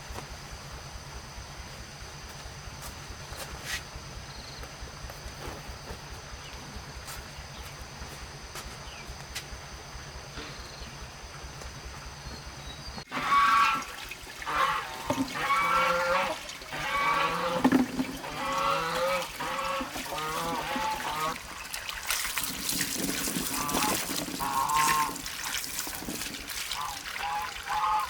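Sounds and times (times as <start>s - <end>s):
waterfowl calling: 12.6s - 22.3s, 23.4s - 28.0s.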